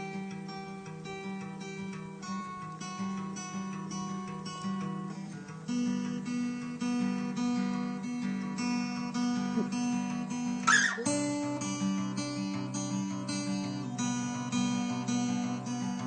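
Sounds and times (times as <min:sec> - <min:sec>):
acoustic guitar picking chords: 0:00.0 - 0:16.0
guitar string scrape: 0:10.6 - 0:11.2.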